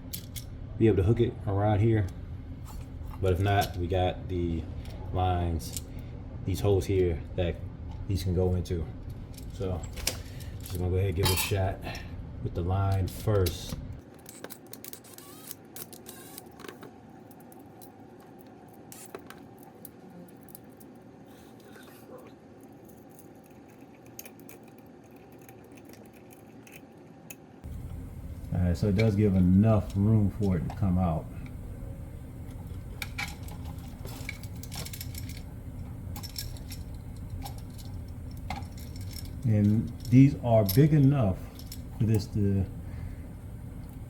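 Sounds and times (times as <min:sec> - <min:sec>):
wire clicking and scraping: 0:22.7 - 0:42.6.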